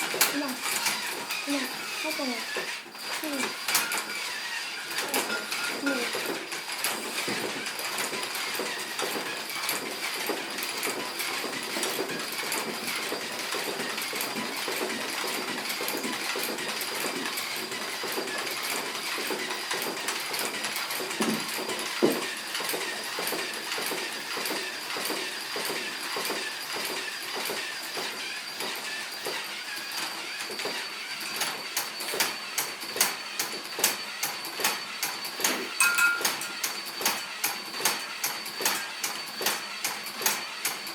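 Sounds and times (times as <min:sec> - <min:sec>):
small motor whining and rattling: 0:00.0 - 0:40.9.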